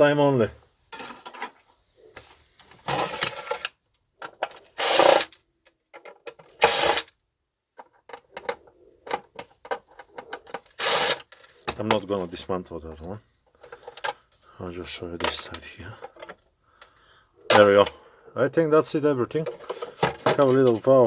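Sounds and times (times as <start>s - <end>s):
plastic scraping and rattling: 0.9s - 1.7s, 2.6s - 14.3s, 15.1s - 16.5s, 19.3s - 21.0s.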